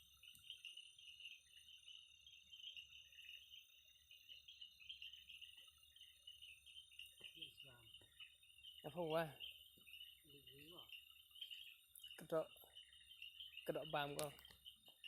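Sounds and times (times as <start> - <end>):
crickets trilling: 0.0 - 15.0.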